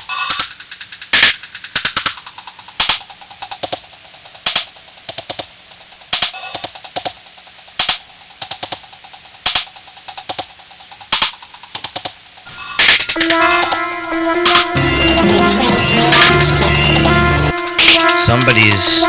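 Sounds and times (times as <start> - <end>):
drum-machine beat: 0.0 - 19.0.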